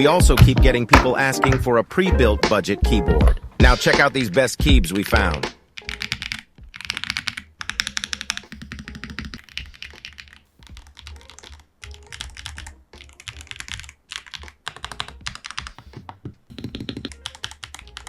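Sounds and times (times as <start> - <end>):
mechanical keyboard typing: 5.8 - 15.8, 16.5 - 18.0.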